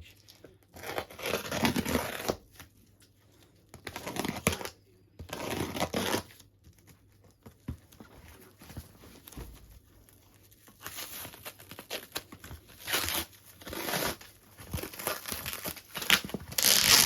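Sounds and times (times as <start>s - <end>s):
packaging tearing and crinkling: 10.8s - 17.0s.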